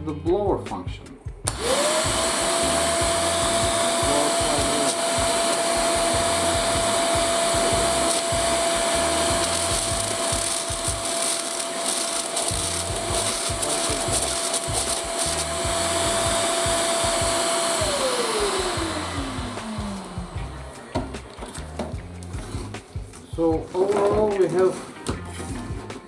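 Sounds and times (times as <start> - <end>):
vacuum cleaner motor whine: 1.5 - 21.6.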